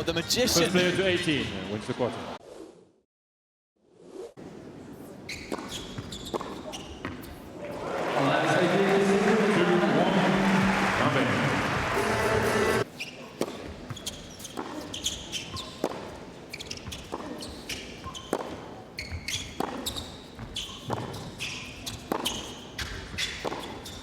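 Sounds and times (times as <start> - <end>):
shoes squeaking on court: 5.0 - 7.7, 11.6 - 24.0
racket striking tennis ball: 5.5 - 7.5, 13.3 - 24.0
loud din: 7.8 - 12.8.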